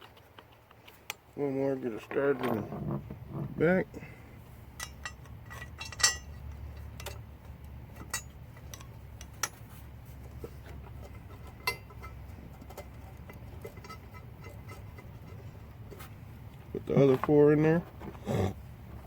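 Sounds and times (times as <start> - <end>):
low background rumble: 1.4 - 19.0
metallic clicks of bolts: 4.8 - 9.6.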